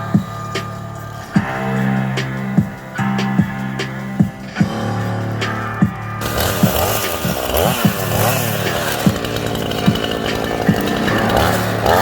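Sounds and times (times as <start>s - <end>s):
chainsaw revving: 6.2s - 12.0s.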